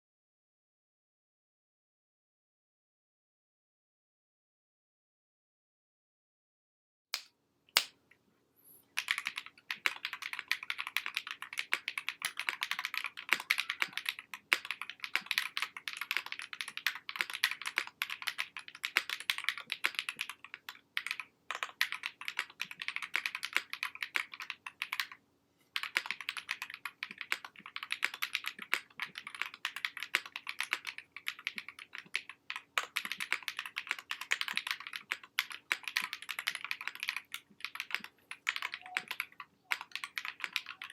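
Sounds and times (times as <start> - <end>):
mechanical keyboard typing: 9.0 - 25.2, 25.8 - 40.9.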